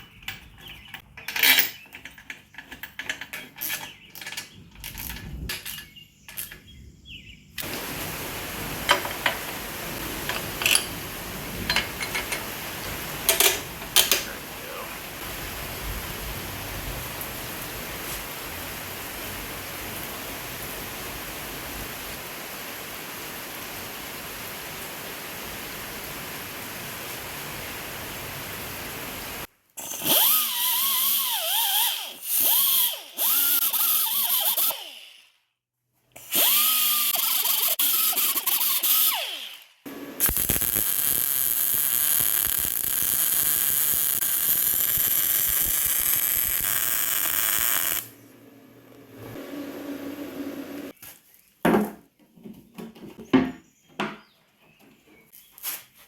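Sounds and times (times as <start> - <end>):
handheld power tool running: 29.8 - 35.3, 36.2 - 39.6, 40.2 - 48.2.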